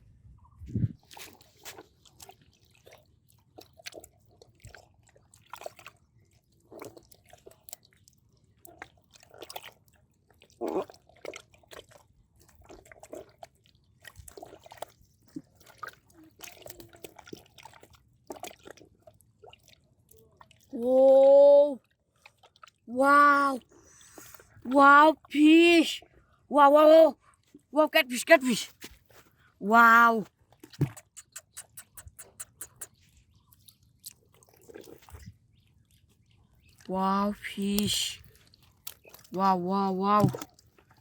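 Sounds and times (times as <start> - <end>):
hands squelching in wet mud: 12.6 - 18.9, 28.4 - 41.0
water dripping: 36.7 - 40.9.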